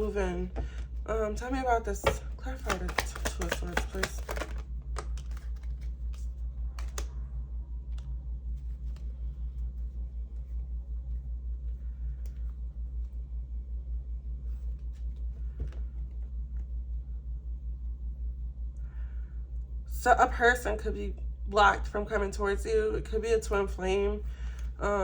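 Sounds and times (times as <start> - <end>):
cards clicking: 2.0 - 7.1.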